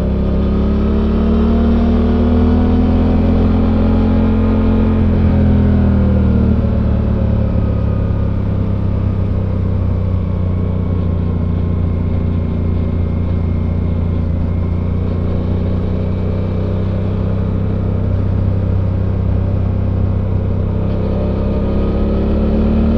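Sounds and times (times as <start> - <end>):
motorcycle engine while riding: 0.0 - 22.9.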